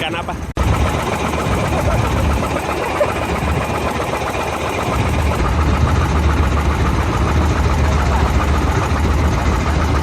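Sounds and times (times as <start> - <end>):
small engine humming: 0.6 - 10.0.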